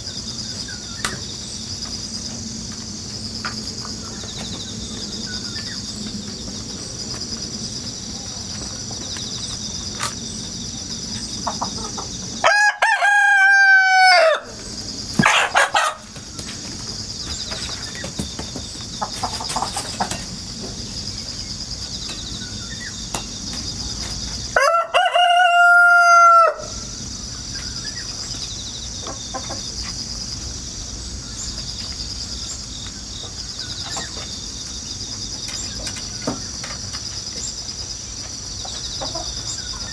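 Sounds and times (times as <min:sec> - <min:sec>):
crickets chirring: 0:00.0 - 0:39.9
rooster crowing: 0:11.7 - 0:14.6, 0:15.2 - 0:16.1, 0:24.5 - 0:27.0.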